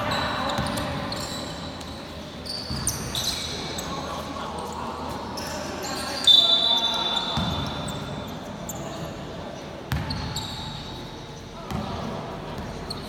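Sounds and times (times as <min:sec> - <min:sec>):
basketball bouncing on court: 0:07.4 - 0:07.9, 0:09.9 - 0:10.5.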